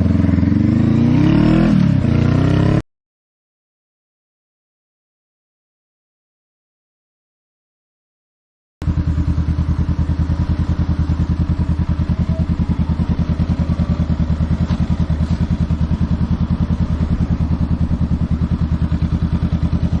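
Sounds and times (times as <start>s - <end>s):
motorcycle engine idling: 0.0s - 1.0s, 8.8s - 20.0s.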